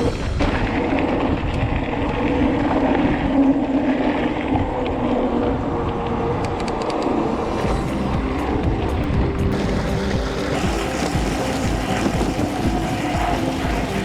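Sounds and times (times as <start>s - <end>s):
wind rushing over microphone: 0.0s - 14.0s
tyres rolling on rough track: 9.5s - 14.0s.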